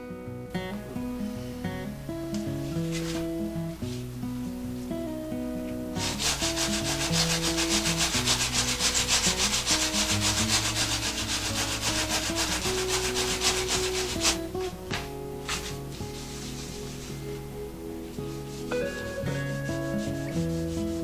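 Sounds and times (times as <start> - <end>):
guitar music: 0.0 - 21.0
hand rubbing on table top: 2.6 - 4.1, 6.0 - 21.0.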